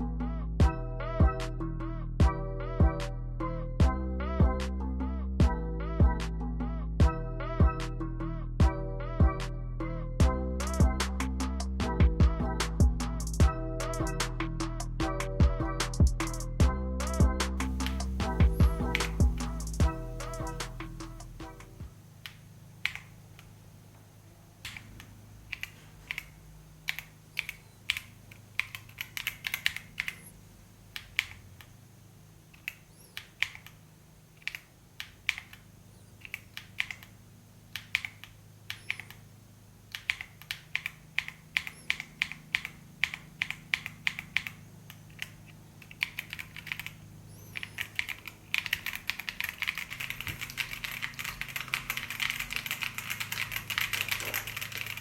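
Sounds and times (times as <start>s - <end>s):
typing on mechanical keyboard: 39.9s - 47.0s, 47.6s - 55.0s.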